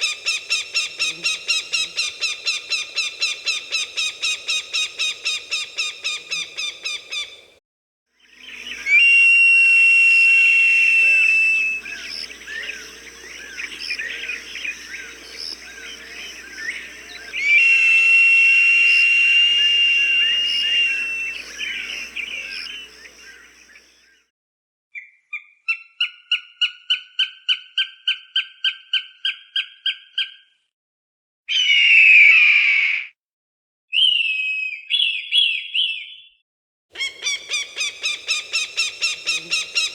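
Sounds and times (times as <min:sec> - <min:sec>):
harsh hawk scream: 0:08.3 - 0:23.5, 0:31.5 - 0:33.1
long high whistle: 0:08.4 - 0:12.0, 0:17.2 - 0:23.0
hawk calling sharply: 0:10.4 - 0:23.1, 0:37.0 - 0:39.9
small chirps: 0:10.8 - 0:23.8.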